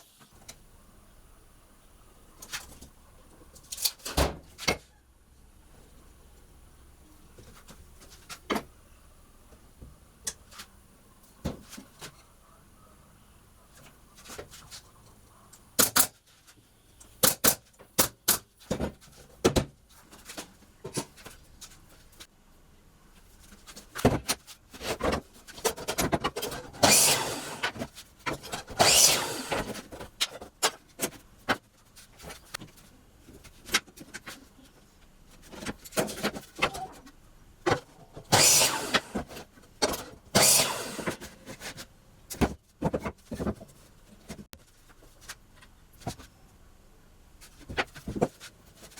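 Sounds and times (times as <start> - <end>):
wooden boards knocking and clattering: 42.4 - 44.4, 47.6 - 48.9.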